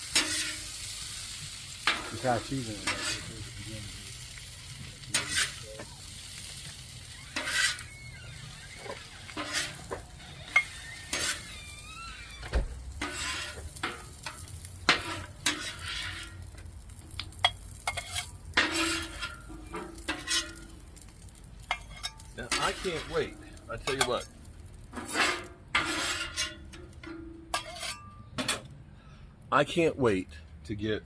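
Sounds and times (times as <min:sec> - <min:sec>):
utensil scraping a pan: 0:00.0 - 0:01.0, 0:01.8 - 0:04.0, 0:05.1 - 0:05.9, 0:06.7 - 0:12.3, 0:12.9 - 0:16.4, 0:17.4 - 0:20.8, 0:21.6 - 0:24.3, 0:24.9 - 0:28.6
potatoes sizzling in oil: 0:00.0 - 0:26.7.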